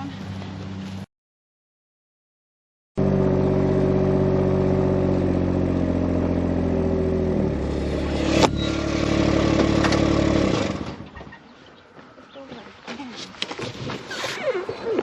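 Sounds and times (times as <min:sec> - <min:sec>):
vehicle engine running: 0:03.0 - 0:11.2.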